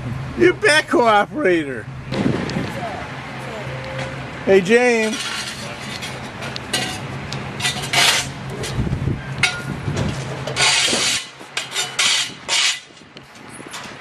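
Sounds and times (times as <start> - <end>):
backhoe scraping with knocks: 5.0 - 8.9, 9.5 - 14.0.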